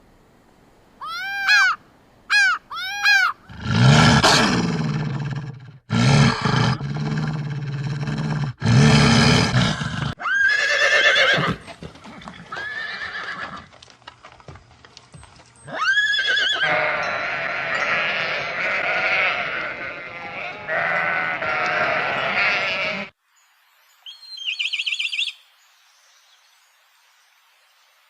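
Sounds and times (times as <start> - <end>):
higher animal call: 1.0 - 3.6, 15.7 - 23.1
horse neighing: 8.1 - 13.7, 15.7 - 23.1.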